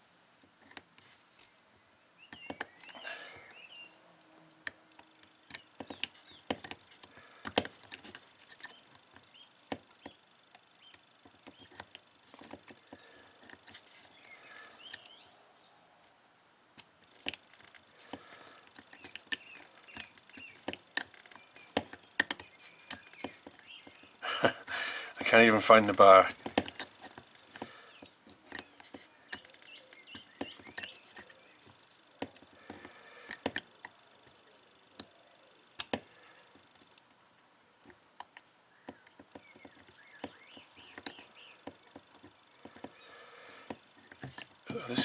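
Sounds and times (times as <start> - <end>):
padlock dials clicking: 18.6 - 25.4, 35.8 - 43.0.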